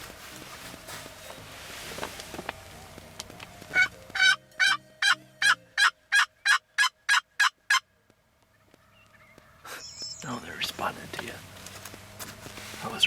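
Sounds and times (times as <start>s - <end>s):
turkey call hen yelps: 3.7s - 7.9s.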